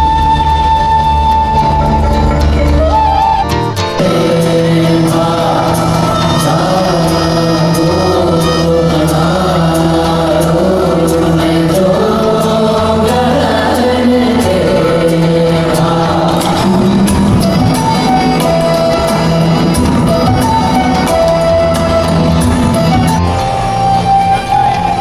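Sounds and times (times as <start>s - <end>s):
group singing with light beat: 4.0s - 23.2s.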